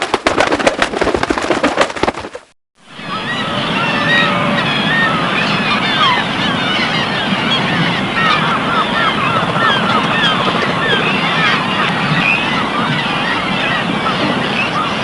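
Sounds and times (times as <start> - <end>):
small birds chirping: 3.0 - 15.0.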